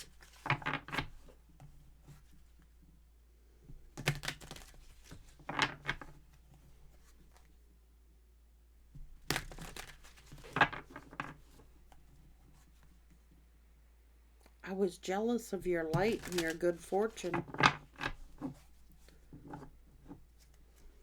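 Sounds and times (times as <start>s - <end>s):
cards being shuffled: 0.0s - 1.4s, 3.9s - 6.3s, 9.2s - 12.9s, 15.6s - 20.9s.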